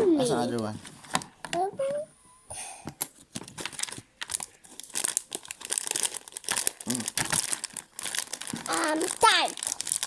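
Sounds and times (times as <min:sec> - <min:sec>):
plastic packaging crinkling: 0:03.0 - 0:10.0.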